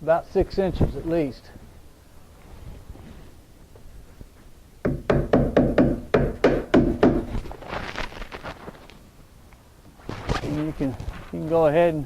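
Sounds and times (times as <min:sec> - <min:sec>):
hammer driving nails: 0:04.8 - 0:07.3
paper rustling: 0:07.4 - 0:09.0, 0:10.0 - 0:11.7.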